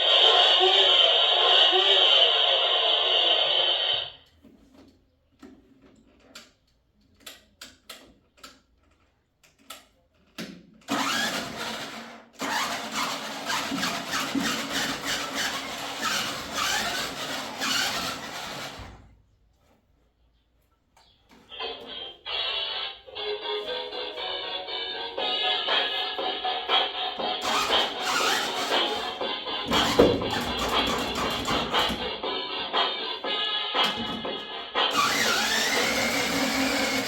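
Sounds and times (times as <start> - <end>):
rhythmic scraping strokes: 10.9 - 18.9, 25.5 - 37.0.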